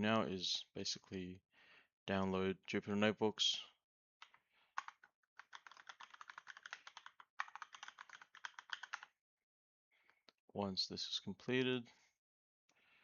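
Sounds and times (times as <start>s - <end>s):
typing on keyboard: 4.2s - 9.1s.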